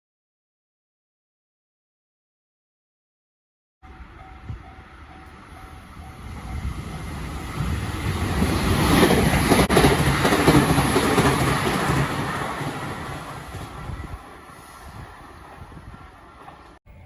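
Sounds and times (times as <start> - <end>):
train wheels rumbling: 3.9 - 17.0.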